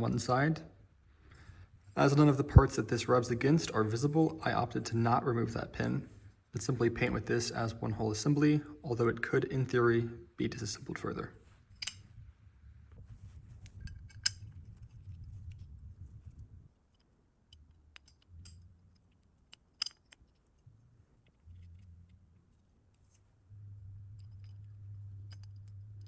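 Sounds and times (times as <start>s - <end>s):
faint low hum: 0.0s - 26.0s
small metal parts clinking: 11.8s - 12.1s, 16.8s - 26.0s.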